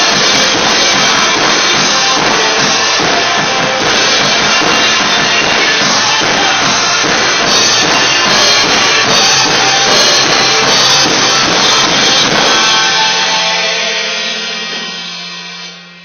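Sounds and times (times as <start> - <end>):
loud rock song: 0.0 - 16.0.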